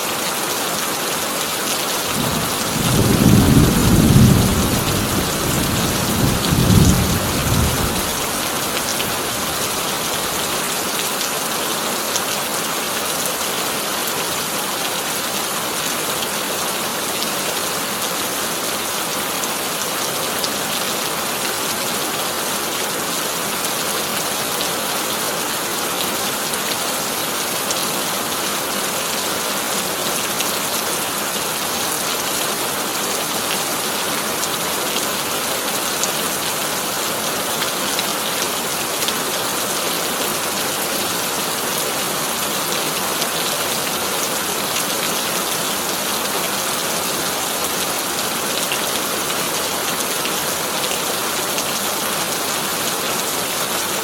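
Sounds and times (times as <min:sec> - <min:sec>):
heavy rain on a tin roof: 0:00.0 - 0:54.0
thunder rumbling: 0:02.1 - 0:09.6.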